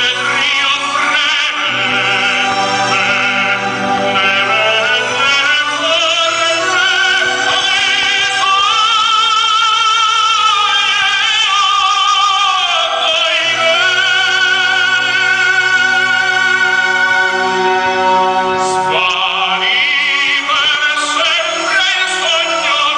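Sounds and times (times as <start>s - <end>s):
musical accompaniment: 0.0s - 22.9s
operatic singer with vibrato: 0.0s - 22.9s.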